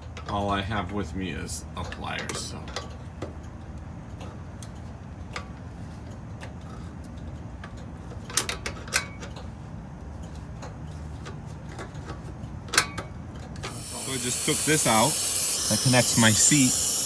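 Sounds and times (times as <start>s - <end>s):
steady low hum: 13.6s - 17.0s.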